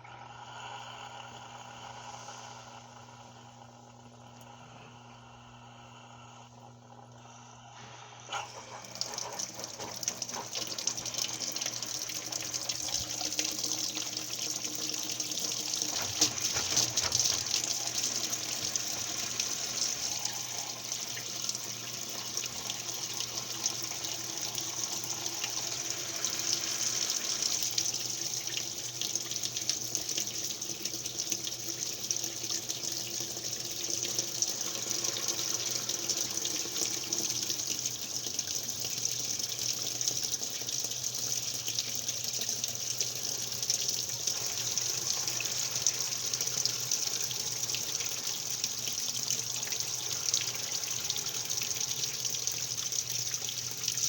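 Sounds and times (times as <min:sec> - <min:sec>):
faint low hum: 0:00.0 - 0:26.0
running water: 0:08.3 - 0:54.0.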